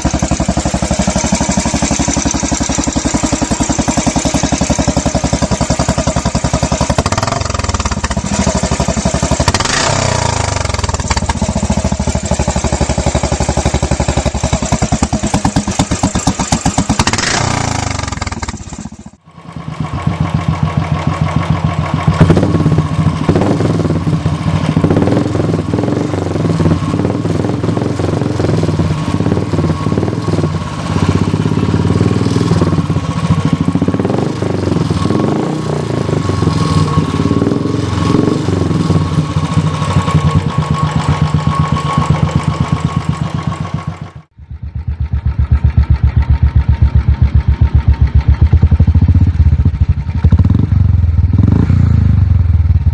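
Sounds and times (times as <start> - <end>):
motorcycle engine thumping at idle: 0.0 - 27.1, 41.8 - 52.9
throttle blips: 44.4 - 49.6.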